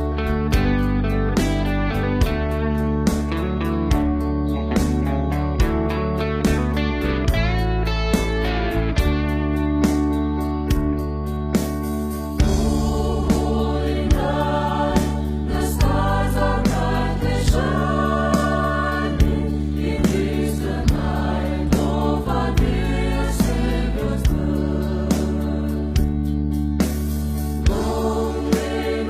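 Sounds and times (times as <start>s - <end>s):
held bass notes: 0.0s - 29.0s
steady drum beat: 11.7s - 29.0s
gospel choir singing: 12.4s - 29.0s.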